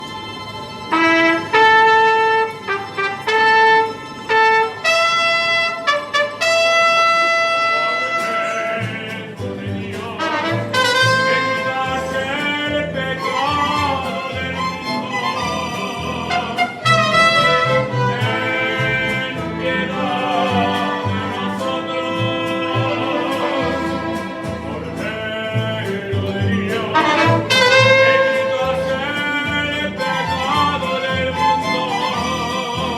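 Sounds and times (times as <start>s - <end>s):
violins playing: 0.0s - 9.1s, 10.0s - 32.9s
trumpets playing held notes: 0.9s - 9.0s, 10.2s - 12.0s, 16.3s - 25.0s, 26.8s - 28.8s
plucked bass line: 8.8s - 32.9s.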